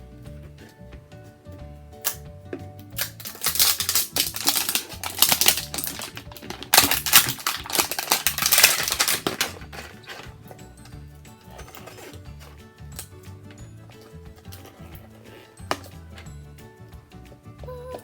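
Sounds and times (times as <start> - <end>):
background music: 0.0 - 18.0
packaging tearing and crinkling: 3.0 - 10.3.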